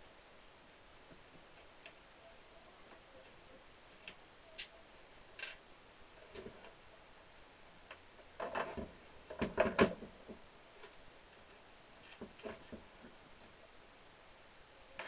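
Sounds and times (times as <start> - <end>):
small parts and tools clattering: 5.4 - 5.6, 8.4 - 10.1.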